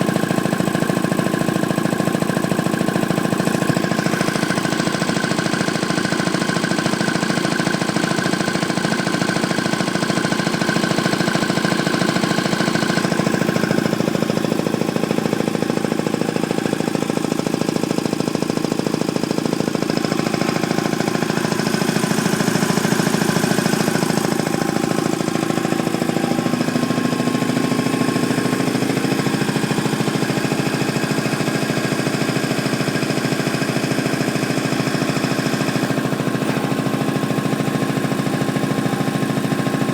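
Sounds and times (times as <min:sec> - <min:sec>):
piston air compressor pulsing: 0:00.0 - 0:39.9.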